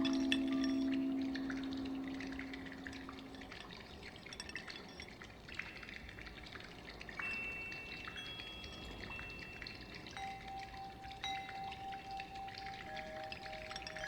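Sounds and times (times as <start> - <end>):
high clear chime tones: 0.0 - 3.7, 7.2 - 14.0
water dripping and trickling: 0.0 - 14.0.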